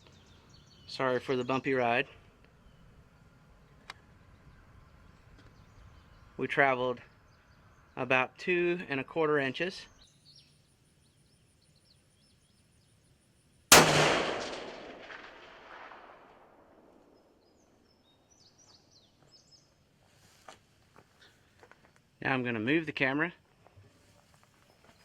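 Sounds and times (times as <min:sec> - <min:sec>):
rifle shot with rolling echo: 0:13.7 - 0:17.4.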